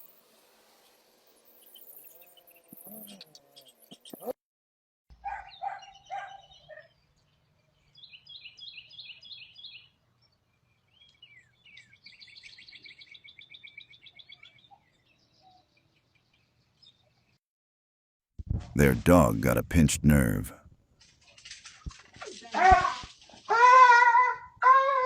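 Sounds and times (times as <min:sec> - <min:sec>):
songbirds chirping and trilling: 0:00.1 - 0:04.3, 0:05.1 - 0:17.4.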